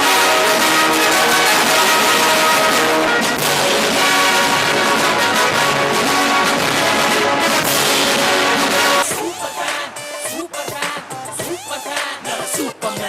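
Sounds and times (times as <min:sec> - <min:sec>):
orchestral music with brass: 0:00.0 - 0:09.2.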